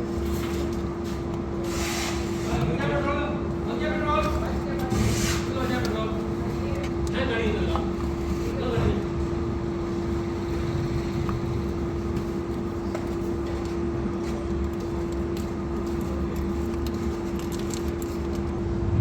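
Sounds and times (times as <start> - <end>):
machine hum: 2.4 - 19.0
low rumble: 18.6 - 19.0.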